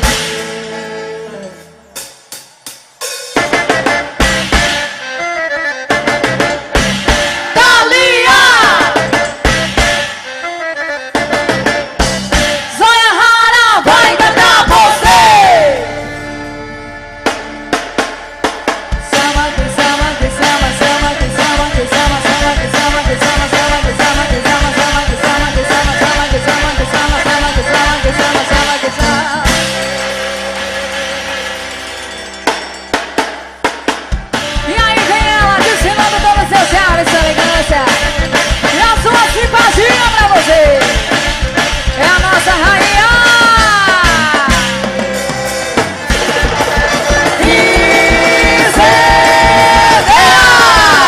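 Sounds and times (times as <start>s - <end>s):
sliding melody line: 13.9s - 51.0s
chord ringing out: 28.9s - 34.5s
drum beat: 33.0s - 51.0s
person singing: 47.2s - 51.0s.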